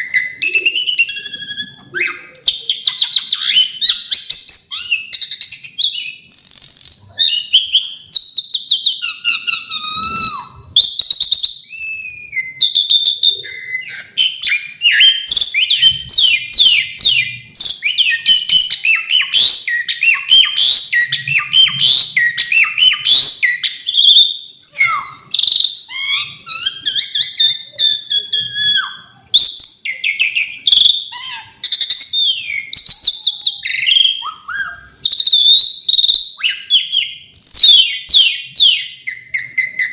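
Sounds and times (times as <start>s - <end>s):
starling singing: 0.0s - 39.9s.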